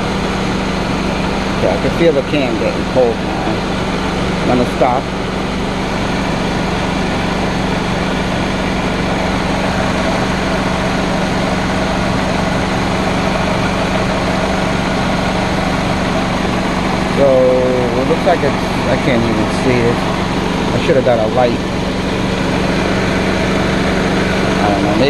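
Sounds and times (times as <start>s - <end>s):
car engine idling: 0.0s - 25.0s.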